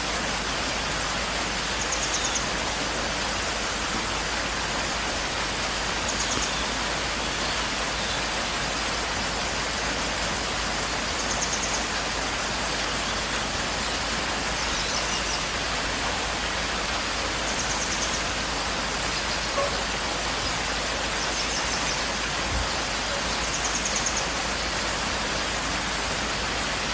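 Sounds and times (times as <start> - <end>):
waterfall rushing: 0.0 - 26.9.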